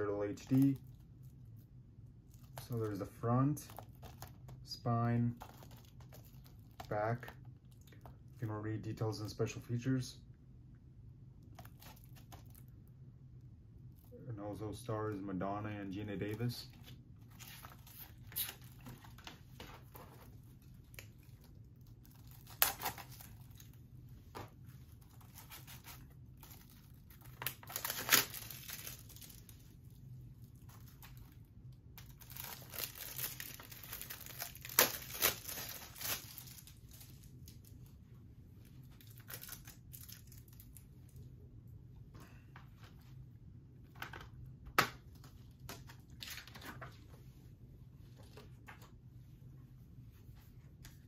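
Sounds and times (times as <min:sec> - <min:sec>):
plastic wrapping tearing: 0:05.4 - 0:07.8, 0:17.3 - 0:19.2, 0:20.8 - 0:23.8, 0:25.0 - 0:29.6, 0:32.0 - 0:37.7, 0:39.0 - 0:40.8.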